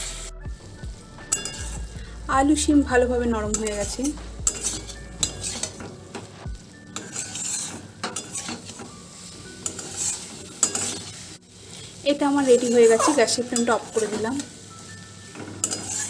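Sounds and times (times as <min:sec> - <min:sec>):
light sizzling: 0:00.0 - 0:16.0
spatula scraping a pan: 0:01.3 - 0:02.0, 0:03.5 - 0:14.6, 0:15.3 - 0:16.0.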